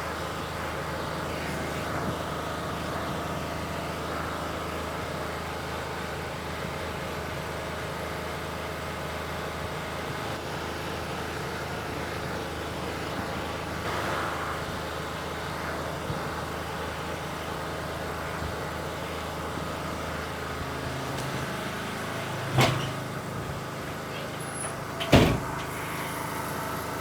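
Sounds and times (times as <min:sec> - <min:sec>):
road noise: 0:00.0 - 0:27.0
vehicle running hum: 0:00.0 - 0:27.0.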